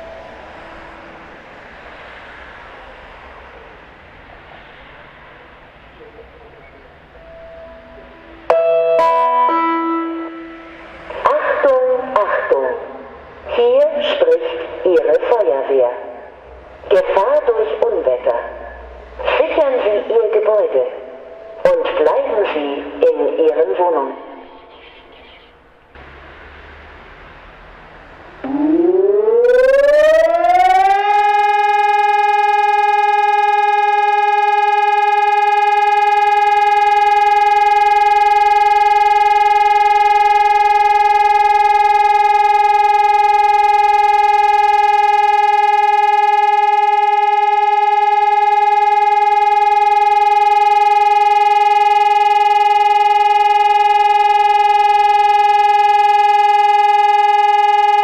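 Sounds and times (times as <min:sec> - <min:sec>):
electronic siren rising tone: 0:00.0 - 0:03.8, 0:07.2 - 0:12.3, 0:28.4 - 0:58.0.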